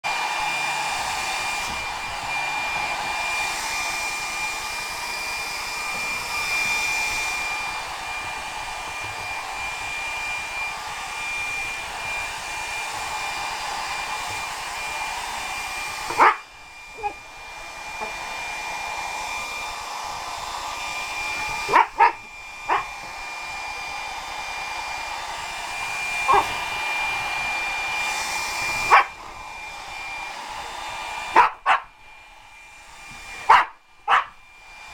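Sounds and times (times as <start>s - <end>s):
hair dryer whine: 0.0s - 34.9s
dog barking sharply: 16.1s - 17.2s, 21.6s - 23.0s, 26.2s - 26.6s, 28.8s - 29.2s, 31.3s - 31.9s, 33.4s - 34.4s.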